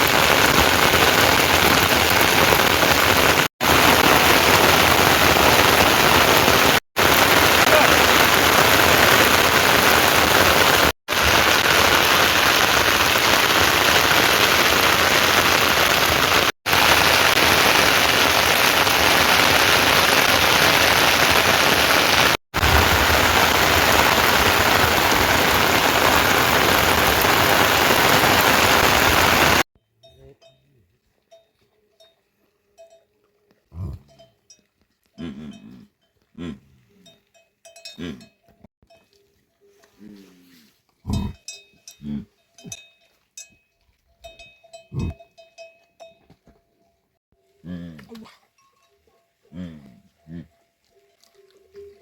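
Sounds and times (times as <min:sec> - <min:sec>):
heavy rain falling: 0:00.0 - 0:29.7.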